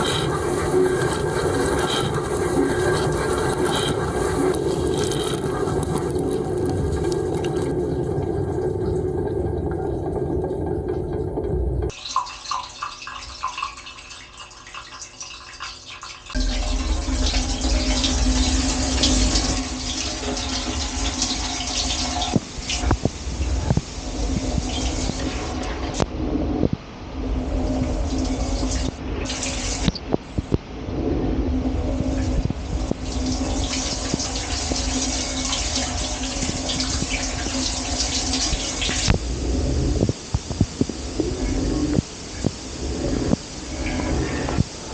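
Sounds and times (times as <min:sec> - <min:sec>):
circulation pump hum: 0:00.0 - 0:12.0, 0:16.4 - 0:44.9
dishwasher pump hum: 0:00.0 - 0:12.0
water spraying inside dishwasher: 0:00.0 - 0:30.6, 0:31.3 - 0:44.9.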